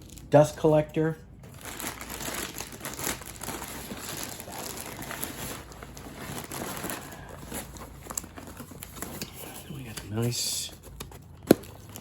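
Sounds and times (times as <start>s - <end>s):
packaging crinkling and rustling: 0.0s - 12.0s.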